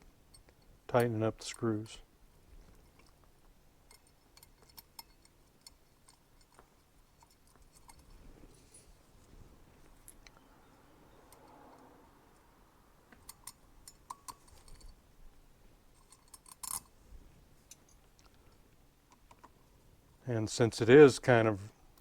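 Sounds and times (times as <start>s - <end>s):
clicks of small metal parts: 3.9s - 8.1s, 13.1s - 15.0s, 16.0s - 16.9s.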